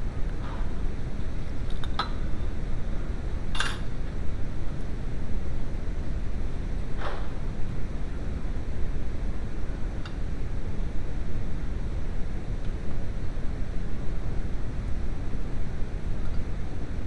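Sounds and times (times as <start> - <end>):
steady low rumble: 0.0 - 17.0
light metallic clinks: 3.6 - 3.9.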